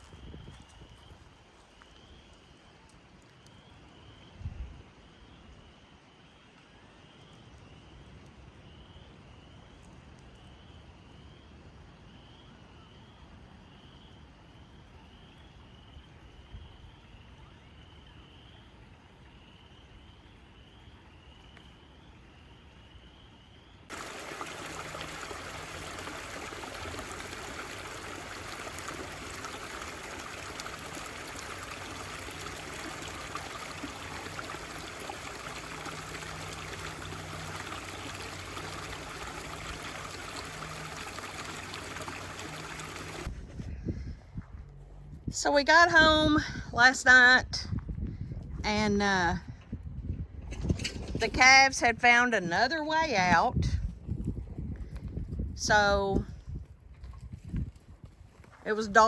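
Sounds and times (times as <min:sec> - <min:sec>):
creek water rushing: 0:23.9 - 0:43.4.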